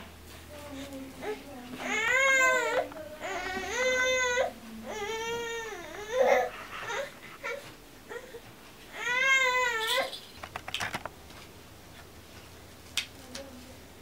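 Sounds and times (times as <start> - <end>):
baby wailing: 1.9 - 10.2.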